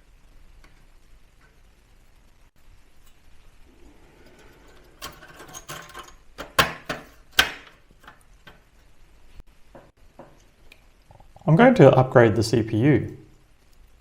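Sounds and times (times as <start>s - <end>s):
small hard parts clicking: 4.2s - 8.8s.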